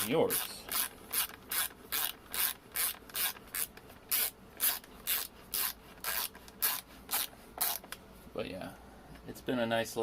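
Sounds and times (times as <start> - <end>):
hand ratchet rasping: 0.0 - 7.9.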